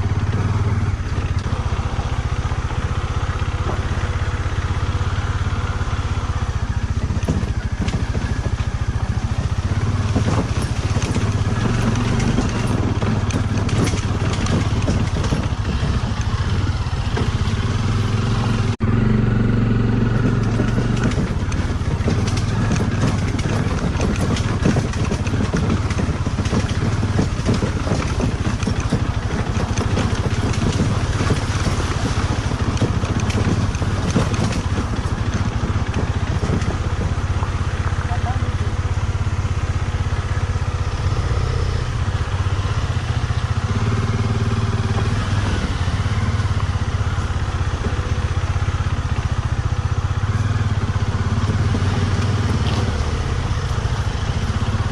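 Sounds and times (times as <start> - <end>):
rattle and clatter: 0.0 - 18.8, 19.8 - 54.9
motorcycle engine running: 0.0 - 54.9.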